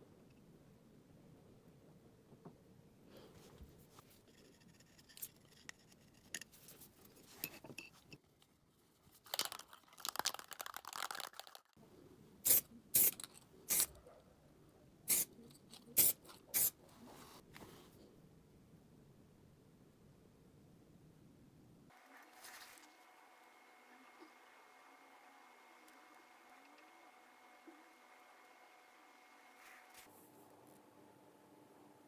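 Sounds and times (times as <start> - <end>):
aerosol can spraying hisses: 16.0 - 16.7
rustling handling noise: 22.1 - 23.0.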